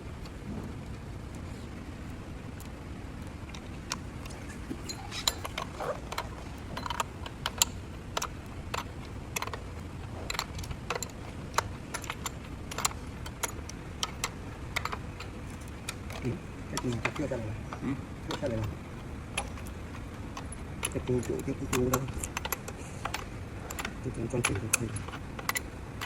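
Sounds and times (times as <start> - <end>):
low background hum: 0.0 - 26.0
small metal parts clinking: 18.3 - 25.8.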